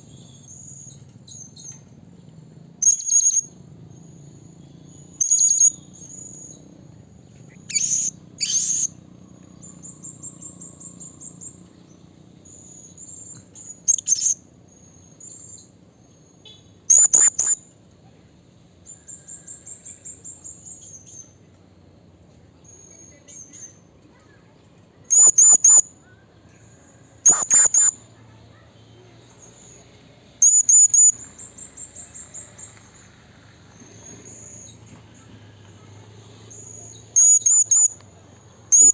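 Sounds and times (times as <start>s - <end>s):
rapid repeated chirps: 2.8s - 3.5s, 5.1s - 6.6s, 7.5s - 9.0s, 12.5s - 14.4s, 16.4s - 17.6s, 25.1s - 25.9s, 27.2s - 28.1s, 30.4s - 32.7s, 36.5s - 38.0s, 38.6s - 38.9s
parrot high-pitched calls: 7.6s - 8.9s, 16.9s - 17.6s, 25.1s - 25.9s, 27.2s - 28.0s, 30.4s - 31.2s, 37.2s - 38.0s.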